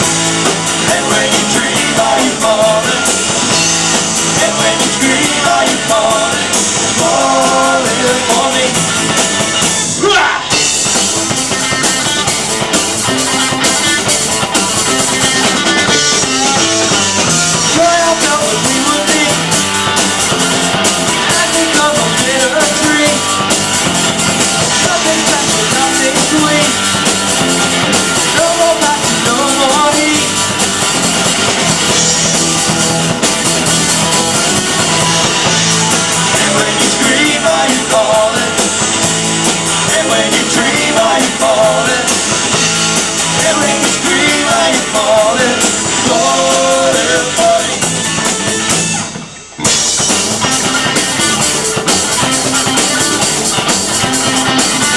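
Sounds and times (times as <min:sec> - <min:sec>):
rock band playing: 0:00.0 - 0:54.9
person singing: 0:00.8 - 0:03.5, 0:04.2 - 0:09.0, 0:17.5 - 0:19.7, 0:21.1 - 0:23.5, 0:24.6 - 0:27.0, 0:28.2 - 0:30.6, 0:36.2 - 0:38.9, 0:39.8 - 0:42.4, 0:43.2 - 0:47.9.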